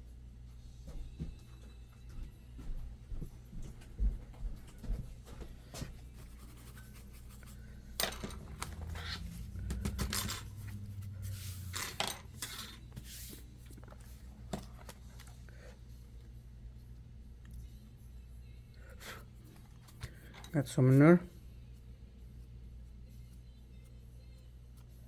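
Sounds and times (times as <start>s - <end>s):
tools scraping and rubbing: 5.9s - 15.4s.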